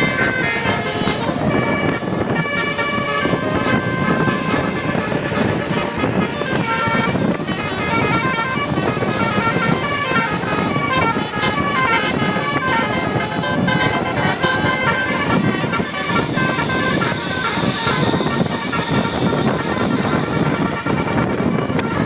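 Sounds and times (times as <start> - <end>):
multi-tone musical bus horn: 0.0 - 22.0
vehicle rumble: 0.0 - 22.0.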